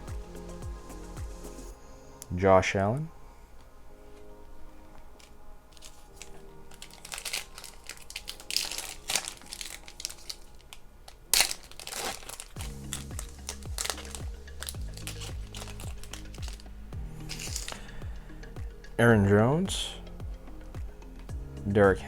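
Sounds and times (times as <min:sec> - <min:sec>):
soft background music: 0:00.0 - 0:22.0
plastic foil wrapper crinkling: 0:05.1 - 0:18.0.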